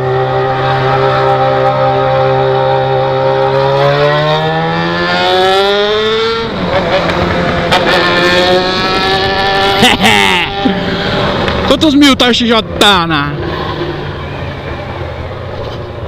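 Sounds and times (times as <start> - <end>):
motorcycle engine running: 0.0 - 11.8.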